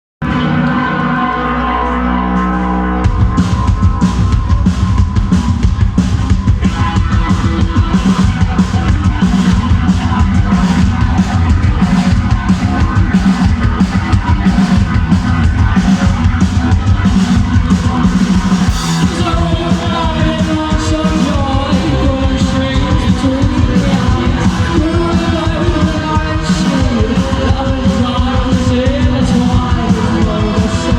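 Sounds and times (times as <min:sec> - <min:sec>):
live rock band playing: 0:00.2 - 0:30.9
drum kit beat: 0:03.0 - 0:30.9
person singing or yelling: 0:18.7 - 0:30.9.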